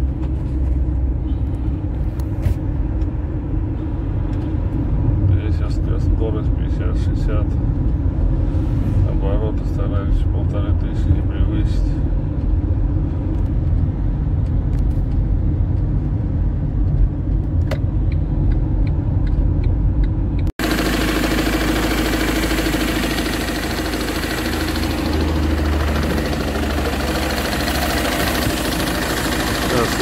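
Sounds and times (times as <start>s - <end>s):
van engine and road rumble: 0.0s - 30.0s
engine running close up: 20.0s - 30.0s.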